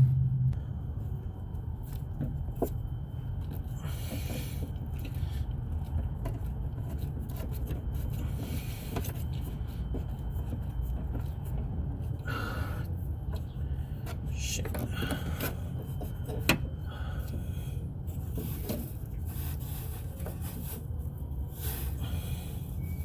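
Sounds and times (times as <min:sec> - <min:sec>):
low rumble: 0:00.0 - 0:04.1.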